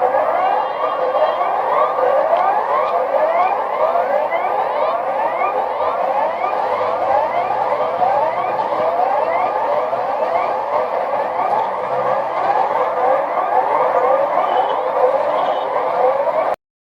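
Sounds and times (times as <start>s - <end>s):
siren tone sweeping upward: 0.0s - 16.6s.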